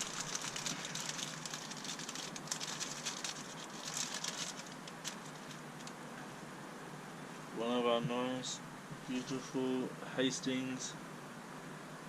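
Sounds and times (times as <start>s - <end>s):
crinkling packaging: 0.0s - 6.0s.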